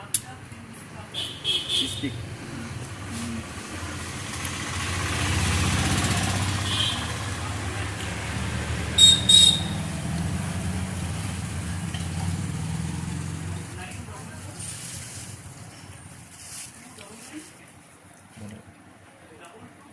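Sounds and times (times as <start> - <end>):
low engine rumble: 2.5 - 17.6
sharp high-pitched chirps: 9.0 - 9.9.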